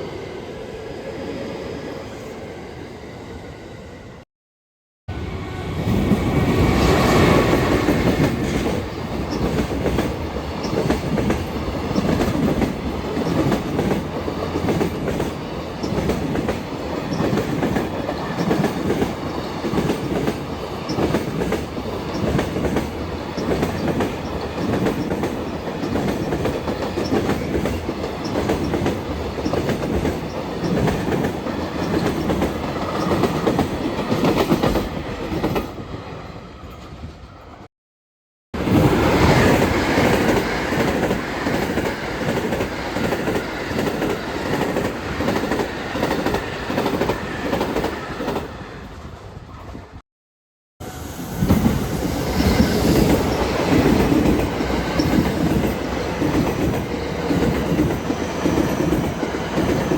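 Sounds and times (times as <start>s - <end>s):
train wheels clattering over rails: 51.5s - 59.9s.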